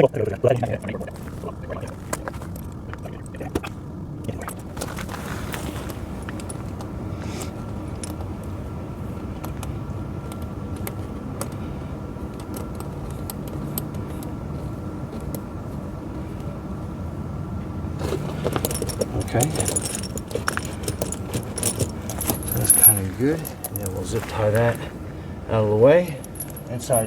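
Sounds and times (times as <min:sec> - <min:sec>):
steady low hum: 0:00.0 - 0:27.0
chain links clinking and rattling: 0:01.0 - 0:06.9, 0:18.0 - 0:25.1, 0:26.1 - 0:27.0.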